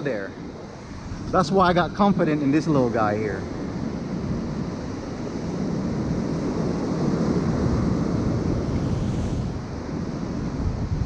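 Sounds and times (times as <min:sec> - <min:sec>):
wind buffeting microphone: 0:07.3 - 0:11.0
ocean waves: 0:08.2 - 0:10.0.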